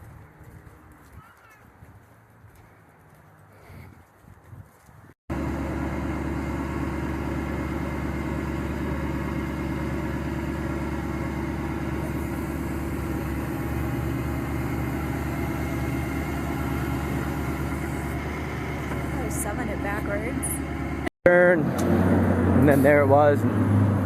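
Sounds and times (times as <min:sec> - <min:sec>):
vehicle engine idling: 0:05.3 - 0:21.1.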